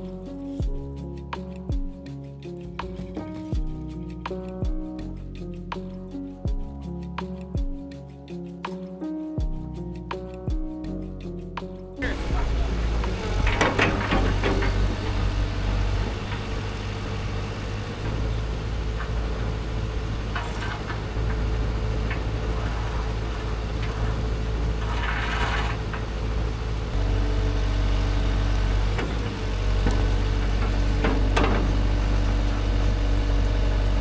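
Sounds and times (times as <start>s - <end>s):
excavator engine running: 12.0s - 34.0s.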